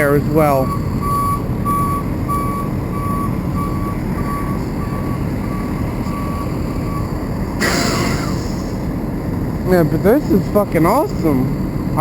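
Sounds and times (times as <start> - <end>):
truck backup alarm beeping: 0.0 - 9.0
diesel engine rumbling: 0.0 - 12.0.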